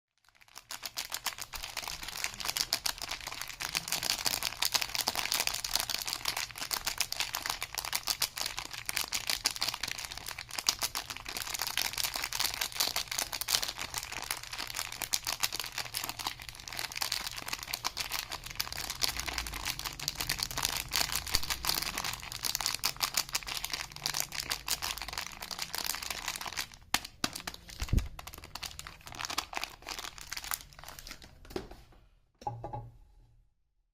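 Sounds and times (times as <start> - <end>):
wrappers crinkling: 0.2 - 31.5.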